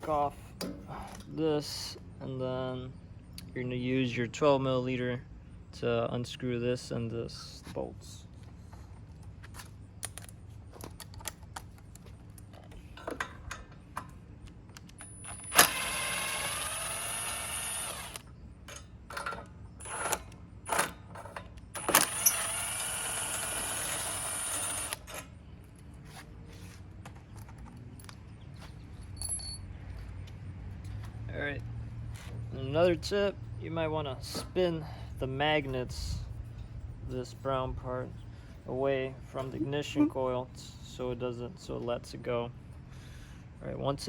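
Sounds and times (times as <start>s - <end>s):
power drill running: 15.2s - 18.3s, 19.8s - 20.2s, 21.8s - 25.2s.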